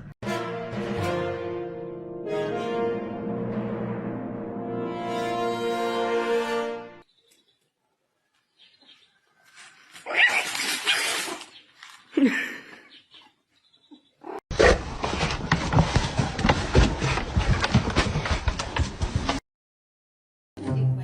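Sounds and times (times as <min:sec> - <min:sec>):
rapid rattling and knocking: 0:15.0 - 0:19.4.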